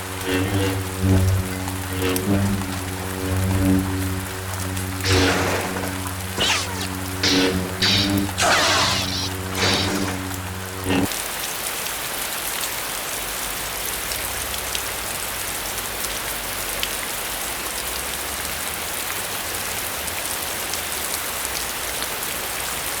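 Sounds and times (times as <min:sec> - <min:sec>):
rain hissing: 0:00.0 - 0:11.1.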